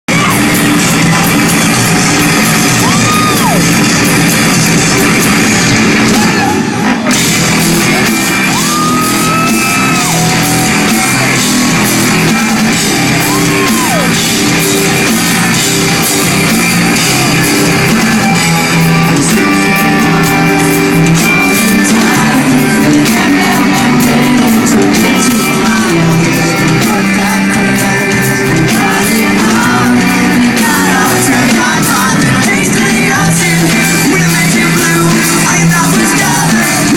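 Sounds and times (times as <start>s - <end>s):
rock band playing live: 0.1s - 36.9s
person singing and yelling: 8.0s - 16.0s, 16.7s - 36.9s.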